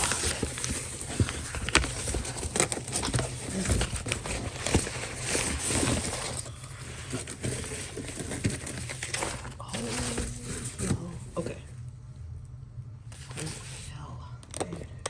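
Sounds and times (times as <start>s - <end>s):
packaging rustling and crinkling: 0.0s - 11.6s.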